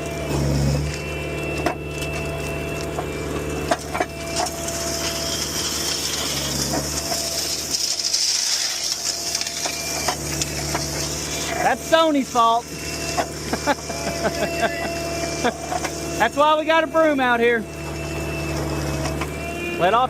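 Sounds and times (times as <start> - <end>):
diesel engine running: 0.0 - 20.0
loose stone grinding rattle: 4.3 - 11.5.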